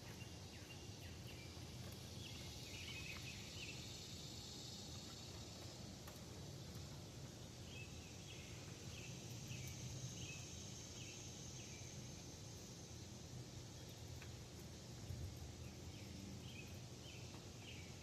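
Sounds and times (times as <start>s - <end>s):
bird chirping: 0.0s - 4.1s
high insect-like hiss: 0.0s - 18.0s.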